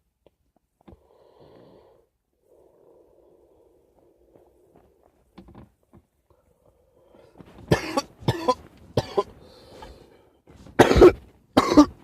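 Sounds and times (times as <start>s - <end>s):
man coughing hard: 7.7s - 9.4s, 10.8s - 12.0s.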